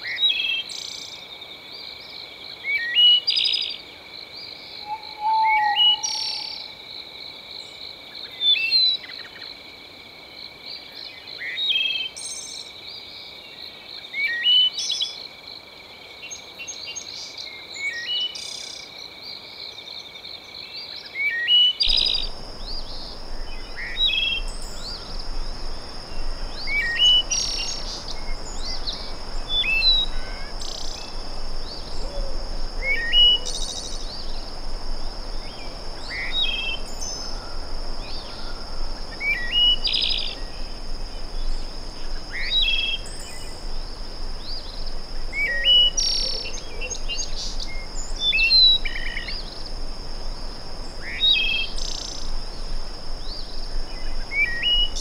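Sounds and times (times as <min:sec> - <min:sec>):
high-pitched insect trill: 0:04.6 - 0:08.6, 0:21.8 - 0:55.0
bird chirping: 0:04.8 - 0:06.7, 0:21.7 - 0:49.7
low even hiss: 0:14.2 - 0:55.0.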